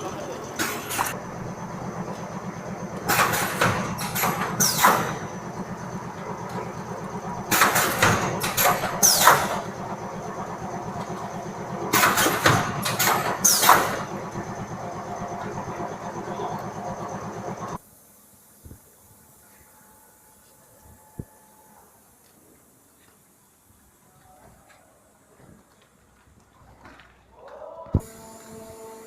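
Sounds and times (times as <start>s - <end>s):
machine motor hum: 0.0s - 17.8s, 27.8s - 29.0s
machine hiss and clatter: 0.0s - 24.1s, 28.0s - 29.0s.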